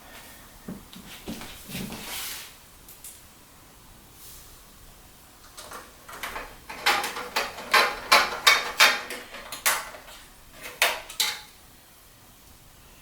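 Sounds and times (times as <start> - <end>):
hard objects clicking and clacking: 5.4 - 11.6.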